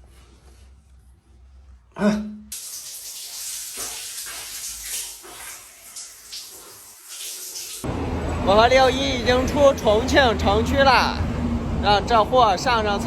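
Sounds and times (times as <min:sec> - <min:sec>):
water running from a tap: 0:02.5 - 0:10.2
low pipe hum: 0:07.8 - 0:12.3.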